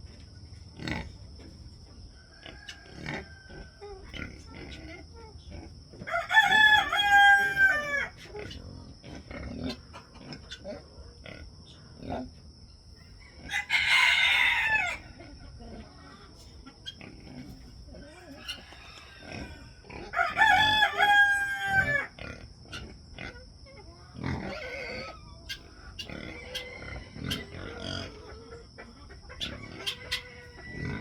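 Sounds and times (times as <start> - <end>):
rooster crowing: 2.2 - 3.8, 6.0 - 8.2, 13.2 - 15.1, 18.4 - 22.2, 26.3 - 28.2, 29.7 - 31.0.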